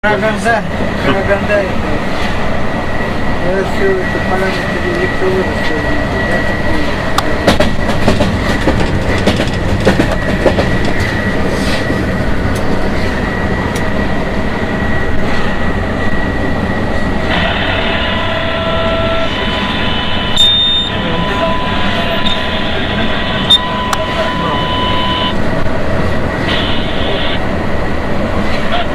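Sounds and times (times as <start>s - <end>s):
locomotive cab rumble: 0.0s - 28.9s
electrical equipment whining: 3.4s - 27.9s.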